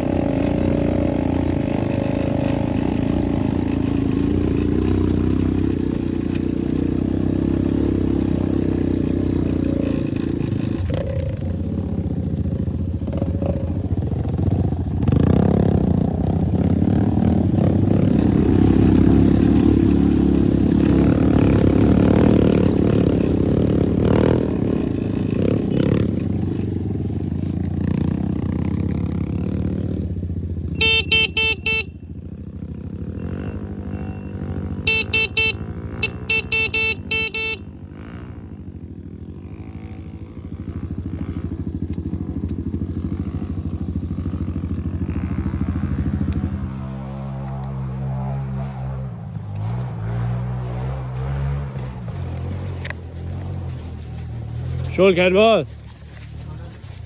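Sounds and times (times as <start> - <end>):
motorcycle engine running: 0.0 - 57.0
short horn beeps: 30.7 - 32.3, 33.2 - 37.9.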